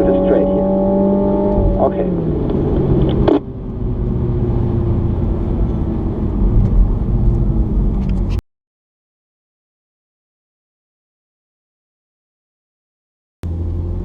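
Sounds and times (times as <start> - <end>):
car engine running: 0.0 - 8.4, 13.4 - 14.0
road rumble: 0.0 - 8.4, 13.4 - 14.0.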